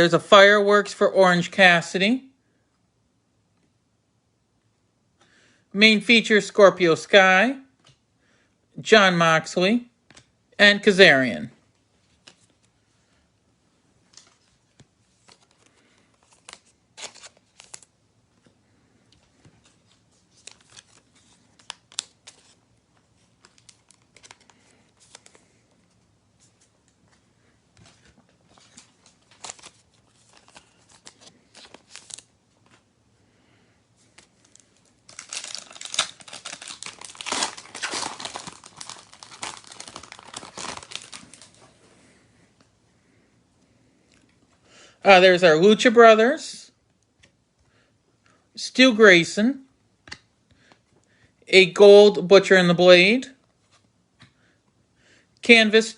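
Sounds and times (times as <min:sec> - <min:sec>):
card pack wrapper ripped open: 0:16.3 - 0:17.9, 0:35.1 - 0:41.5.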